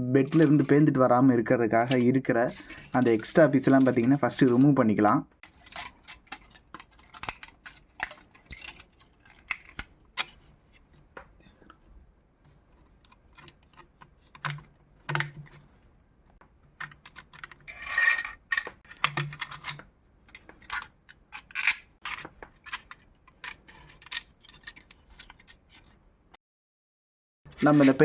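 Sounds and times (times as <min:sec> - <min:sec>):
plastic scraping crackle: 0:01.8 - 0:04.6, 0:05.4 - 0:11.0
plastic parts clicking and snapping: 0:05.4 - 0:10.4, 0:13.0 - 0:15.6, 0:16.7 - 0:26.0.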